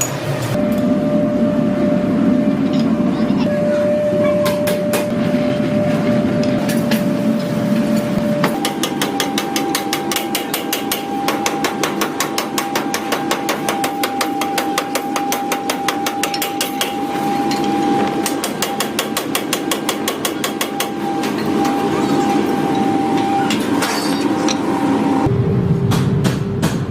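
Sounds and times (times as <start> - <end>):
steady high whine: 0.3 - 8.7
power hammer striking metal: 8.4 - 21.8, 25.8 - 26.9.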